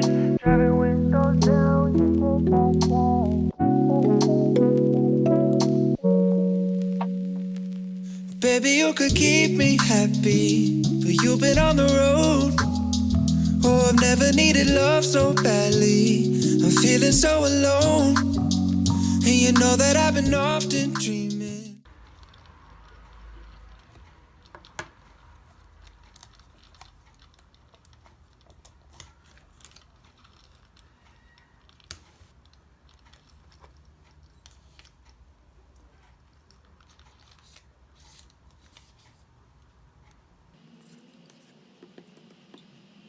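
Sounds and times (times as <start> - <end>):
low hum: 7.2 - 21.8
small clicks and taps: 21.9 - 40.2.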